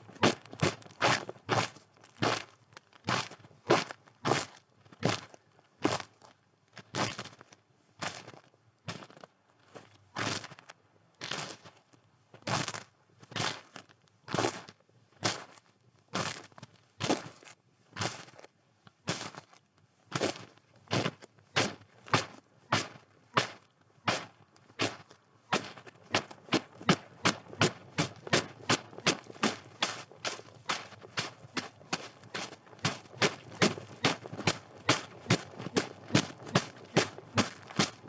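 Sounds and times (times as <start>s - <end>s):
footsteps crunching in snow: 25.6s - 38.0s.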